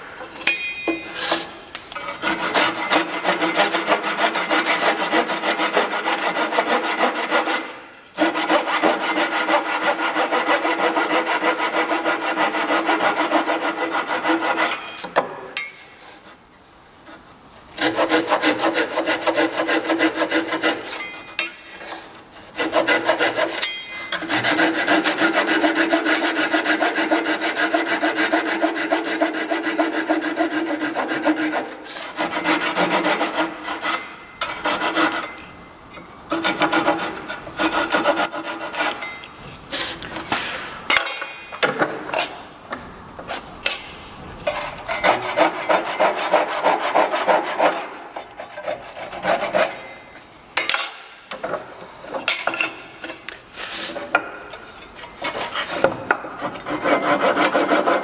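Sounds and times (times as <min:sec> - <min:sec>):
sanding scraping across wood: 0:01.1 - 0:14.8, 0:17.1 - 0:23.6, 0:24.2 - 0:35.2, 0:36.3 - 0:39.0, 0:44.6 - 0:49.8, 0:53.5 - 0:54.1, 0:55.3 - 0:58.0.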